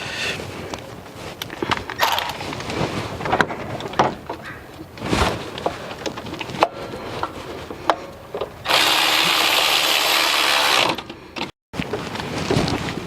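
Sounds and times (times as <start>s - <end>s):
loud rasping noise: 8.7s - 11.0s.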